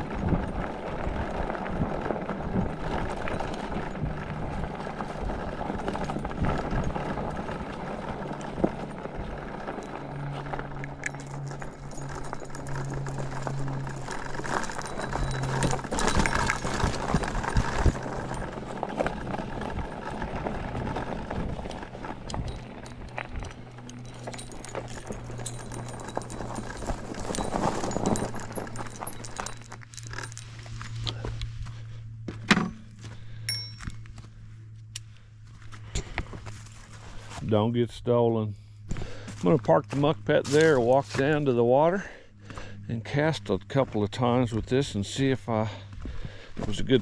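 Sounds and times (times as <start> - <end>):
electric motor hum: 0.0 - 32.4
bike rattling: 0.0 - 47.0.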